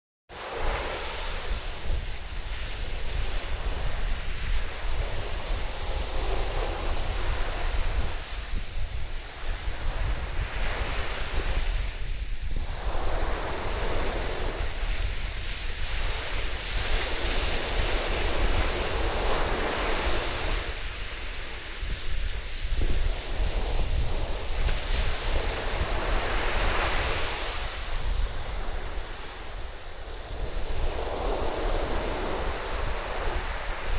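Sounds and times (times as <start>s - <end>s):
sea waves breaking on sand: 0.3s - 33.9s
wind buffeting microphone: 0.4s - 33.9s.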